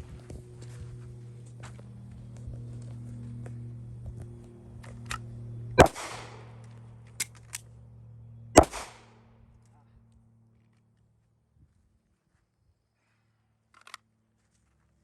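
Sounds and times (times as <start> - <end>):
handgun shots with echo: 5.8 - 7.6, 8.6 - 9.2.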